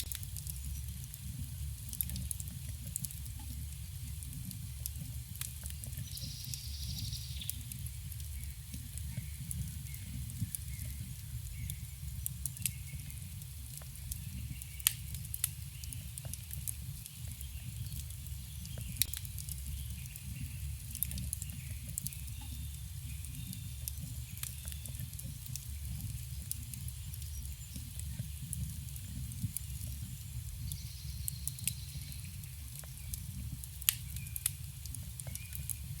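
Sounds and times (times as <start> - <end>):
burning wood crackling and popping: 0.0 - 36.0.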